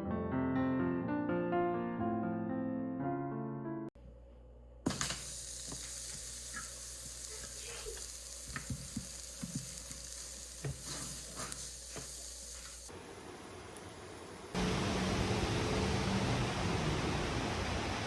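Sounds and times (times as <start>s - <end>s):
food sizzling in a pan: 4.9s - 14.6s.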